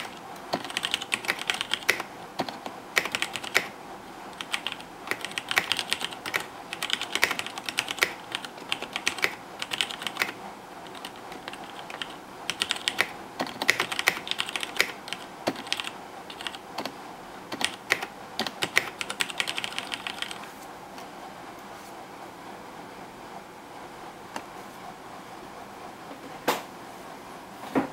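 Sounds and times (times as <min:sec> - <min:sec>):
typing on mechanical keyboard: 0:00.0 - 0:20.4.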